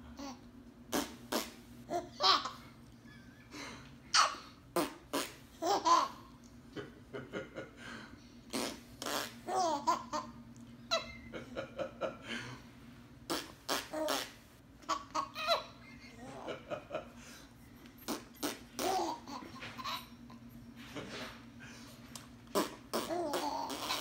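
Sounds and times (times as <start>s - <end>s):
baby laughing: 1.4s - 3.3s, 4.1s - 6.4s, 8.6s - 11.3s, 13.3s - 16.6s, 18.1s - 20.4s, 22.6s - 24.0s
man blowing raspberries: 8.5s - 9.4s.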